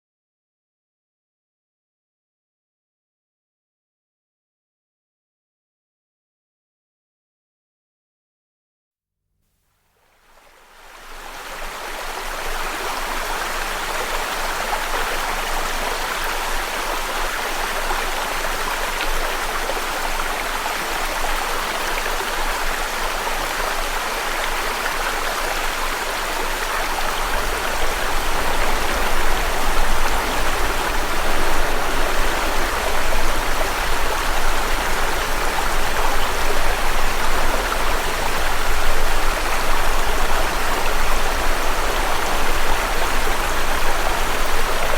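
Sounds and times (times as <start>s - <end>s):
running water rushing: 10.9s - 44.9s
low rumble: 27.0s - 44.9s.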